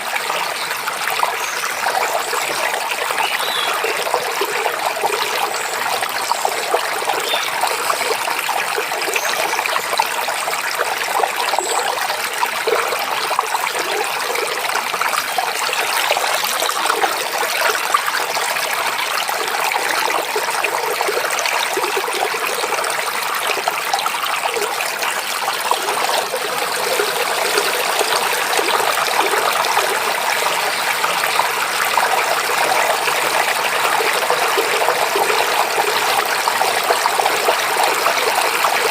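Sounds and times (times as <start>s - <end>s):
stream babbling over rocks: 0.0s - 38.9s.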